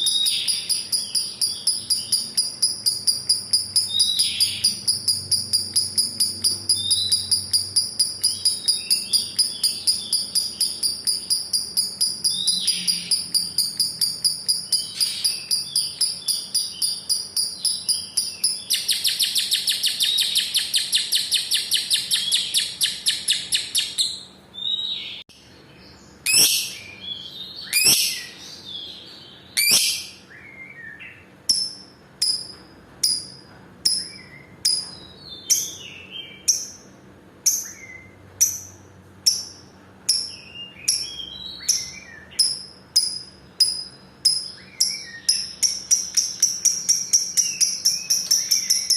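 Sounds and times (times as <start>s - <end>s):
bird chattering trill: 0.0s - 25.2s, 26.2s - 30.3s, 37.5s - 48.9s
bird short chirps: 26.3s - 27.0s.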